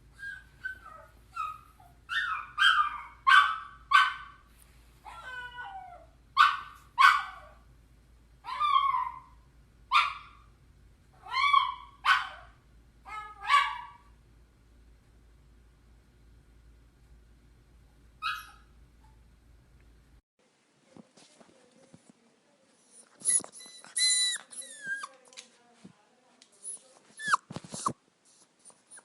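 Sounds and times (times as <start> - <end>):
dog whining and yelping: 0.1 - 4.2, 5.1 - 7.5, 8.5 - 9.4, 11.2 - 12.4, 18.2 - 18.7, 23.0 - 25.2, 26.6 - 28.0, 28.6 - 29.0.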